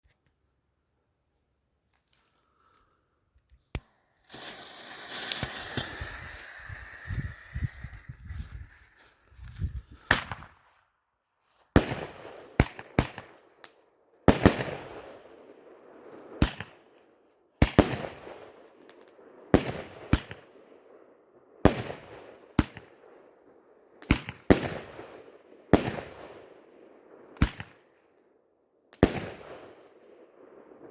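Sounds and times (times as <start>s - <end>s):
firework bangs with hiss: 4.2s - 9.3s, 10.0s - 10.6s, 14.3s - 15.0s, 16.4s - 16.7s, 17.6s - 18.3s, 24.0s - 25.0s, 25.8s - 26.2s, 27.4s - 27.8s, 29.0s - 29.6s.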